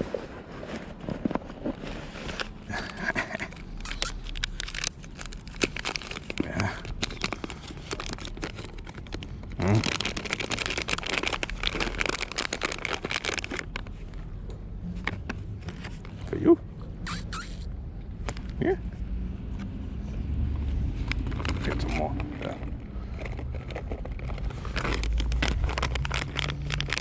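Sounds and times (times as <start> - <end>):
plastic wrapper crinkling: 1.7 - 14.0, 21.1 - 22.0, 22.6 - 27.0.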